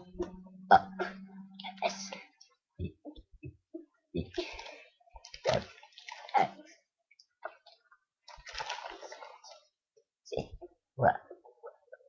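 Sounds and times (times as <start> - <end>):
boy burping: 0.7 - 1.1.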